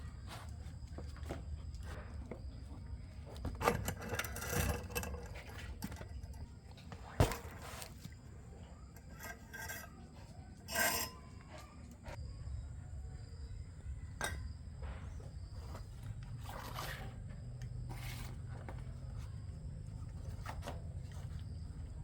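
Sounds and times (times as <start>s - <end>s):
metal parts rubbing and scraping: 3.6s - 6.4s, 8.8s - 11.9s.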